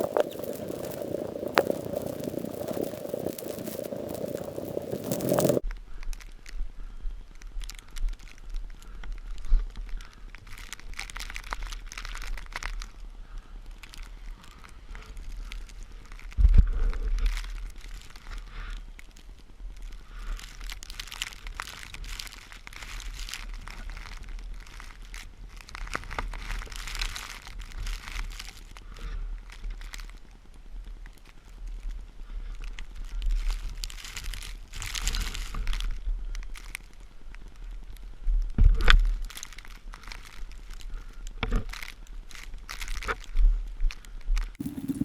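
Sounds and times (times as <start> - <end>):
footsteps crunching through snow: 0.0 - 5.6, 44.6 - 45.0.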